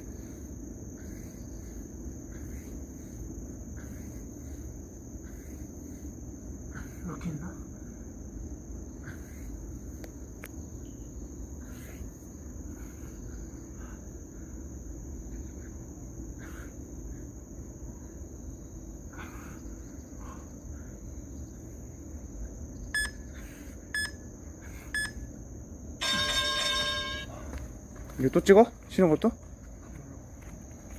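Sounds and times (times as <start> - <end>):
high-pitched insect trill: 0.0 - 30.9
low background hum: 0.0 - 30.9
short electronic beeps: 23.0 - 23.2, 24.0 - 24.2, 25.0 - 25.2.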